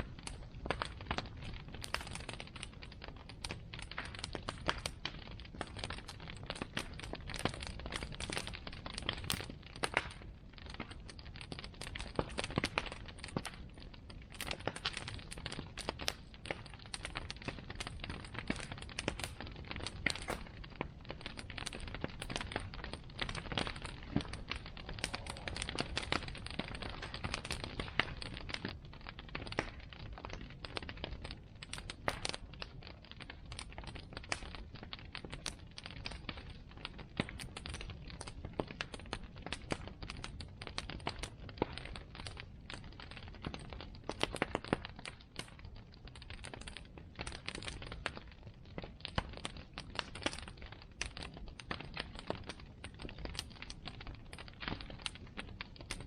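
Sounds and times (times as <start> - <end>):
bonfire crackling and popping: 0.0 - 56.0.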